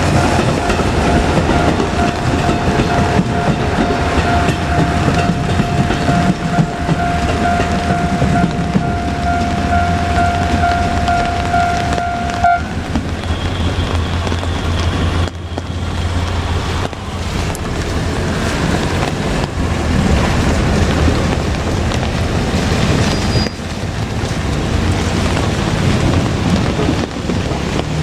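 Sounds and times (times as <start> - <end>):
steady high tone: 0.0 - 14.1
diesel railcar rumbling past: 0.0 - 28.0
wind buffeting microphone: 0.0 - 28.0.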